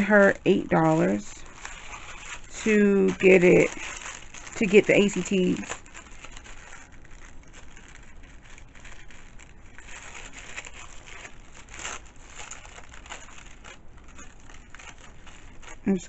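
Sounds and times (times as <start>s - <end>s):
paper rustling and crinkling: 0.0s - 16.0s.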